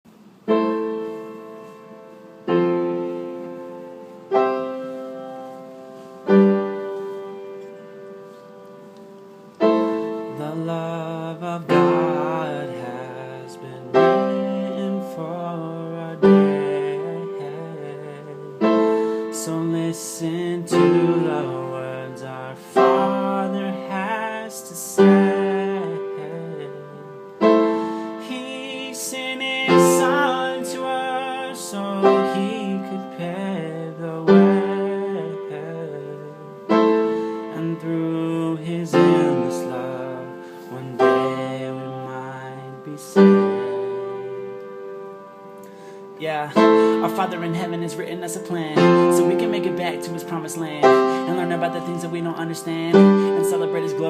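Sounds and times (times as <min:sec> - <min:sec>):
piano chords ringing: 0:00.1 - 0:54.0.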